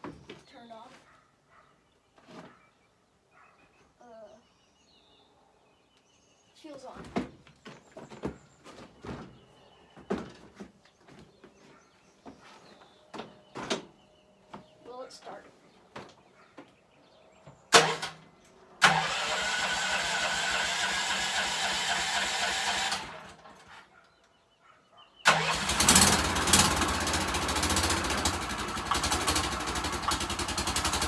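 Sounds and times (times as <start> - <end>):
engine cranking: 17.7 - 18.2, 18.8 - 23.8, 25.3 - 31.0
single-cylinder engine running: 17.8 - 18.2, 18.8 - 23.6, 25.3 - 31.0.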